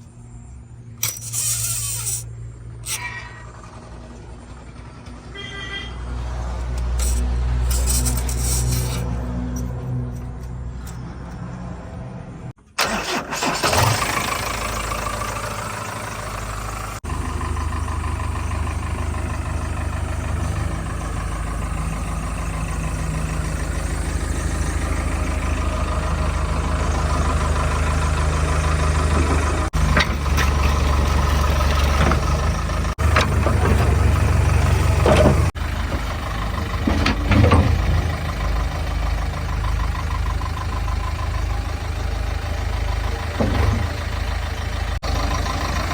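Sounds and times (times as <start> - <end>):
diesel engine revving: 6.0 - 45.9.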